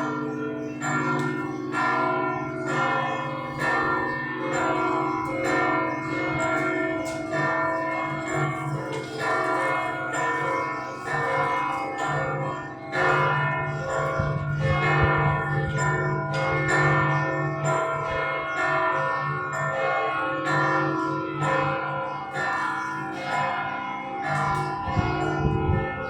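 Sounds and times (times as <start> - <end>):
deep bell tone: 0.0 - 20.3
church bells pealing: 0.0 - 26.0.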